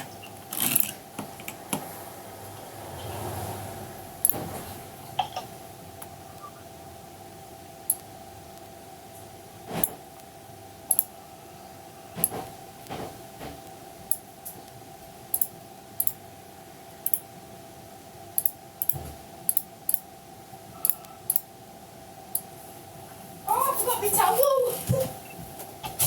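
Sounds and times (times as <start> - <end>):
steady hum: 0.0 - 26.0
sharp clicks: 7.9 - 8.7, 10.9 - 11.1, 15.3 - 16.2, 17.0 - 17.2, 18.4 - 20.1.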